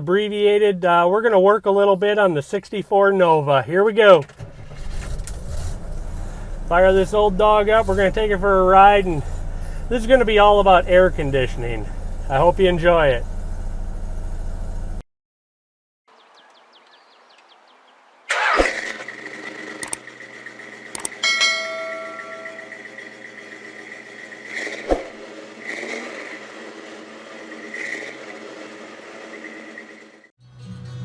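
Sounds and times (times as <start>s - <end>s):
car engine starting and running: 4.1s - 15.0s, 18.9s - 29.9s
sharp clicks or knocks: 21.0s - 21.2s.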